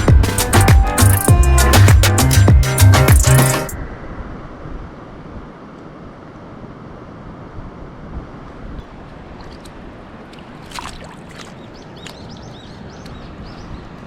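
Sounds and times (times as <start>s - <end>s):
flowing river water: 8.6s - 13.4s.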